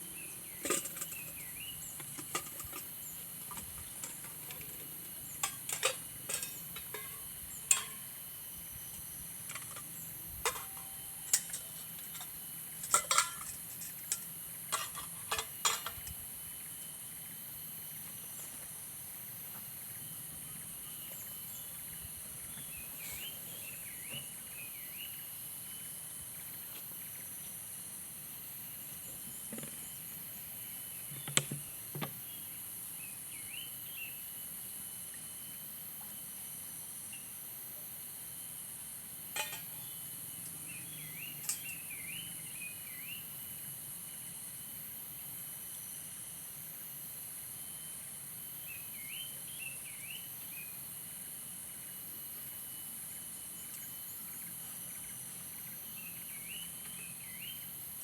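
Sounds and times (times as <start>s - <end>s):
insects droning shrilly: 0.0s - 18.5s
insect chirping calls: 0.0s - 37.5s, 38.4s - 58.0s.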